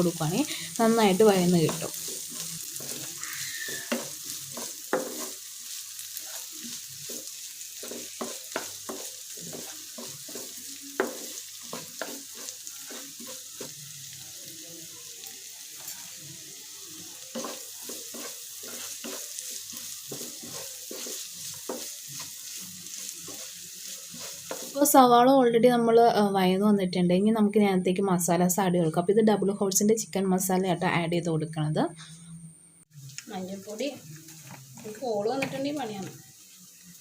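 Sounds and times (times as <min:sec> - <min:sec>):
onions sizzling in a pan: 0:00.0 - 0:26.7, 0:32.9 - 0:37.0
spatula scraping a pan: 0:00.7 - 0:14.0, 0:17.0 - 0:24.8.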